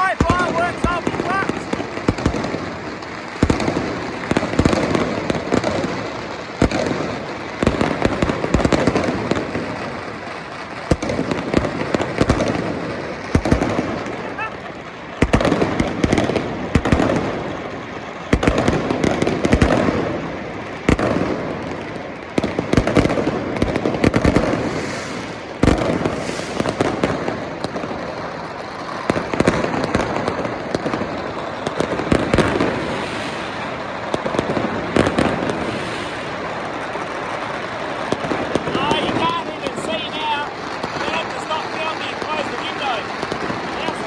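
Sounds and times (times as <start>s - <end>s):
fireworks crackling rumble: 0.0s - 44.0s
sharp firework bangs echoing: 0.0s - 44.0s.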